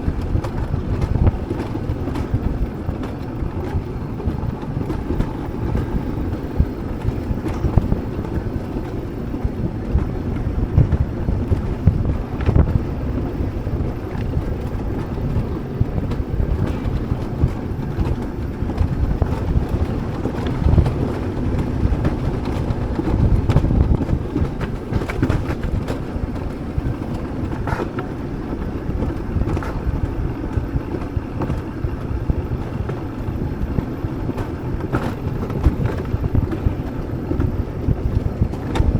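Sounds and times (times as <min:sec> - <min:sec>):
sled rumbling on rails: 0:00.0 - 0:38.9
wind buffeting microphone: 0:00.0 - 0:38.9.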